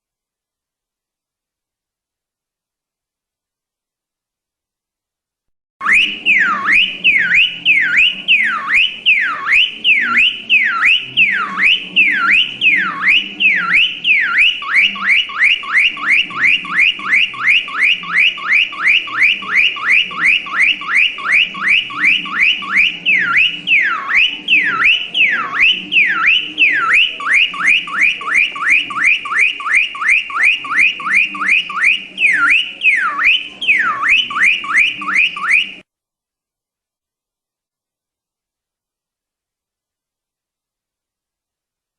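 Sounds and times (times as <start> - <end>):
car alarm siren: 5.8 - 35.8.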